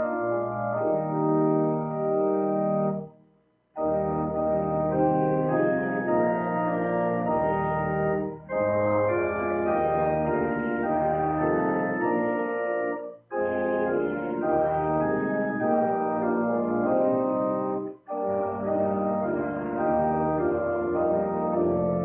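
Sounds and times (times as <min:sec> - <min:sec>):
church organ playing held chords: 0:00.0 - 0:03.2, 0:03.8 - 0:22.0.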